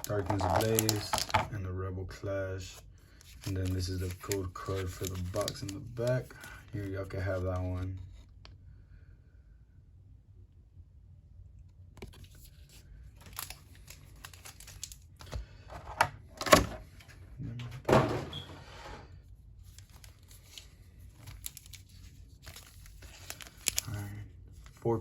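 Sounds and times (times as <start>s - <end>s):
cardboard and plastic rustling: 0.0s - 1.6s, 3.2s - 8.3s, 12.0s - 16.0s, 17.9s - 25.0s.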